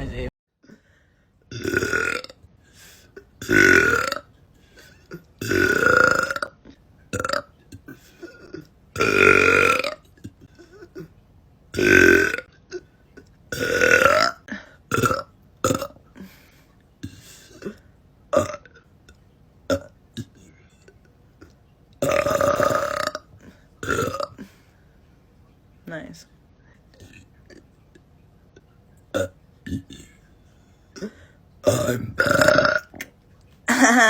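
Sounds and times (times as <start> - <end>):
woman belching: 1.5 - 2.4, 3.4 - 4.3, 5.0 - 11.1, 11.8 - 12.9, 13.5 - 16.0, 17.0 - 18.8, 19.7 - 20.4, 22.0 - 24.5, 29.1 - 30.2, 31.0 - 33.1, 33.7 - 34.0.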